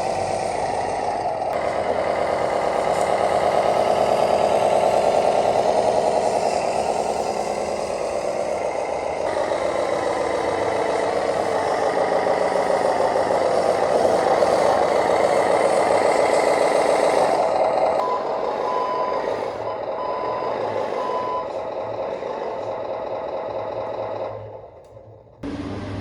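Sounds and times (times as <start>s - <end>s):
rc truck motor and gears: 0.0s - 26.0s
reverse alarm beeps: 18.0s - 21.5s.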